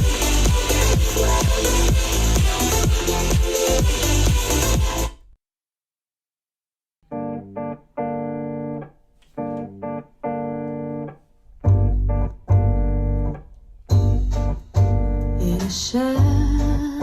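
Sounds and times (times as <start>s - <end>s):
deep bass: 0.0s - 5.1s, 11.7s - 17.0s
keyboard chords: 0.0s - 5.1s, 7.1s - 15.4s
drums: 0.0s - 5.2s, 13.9s - 16.8s.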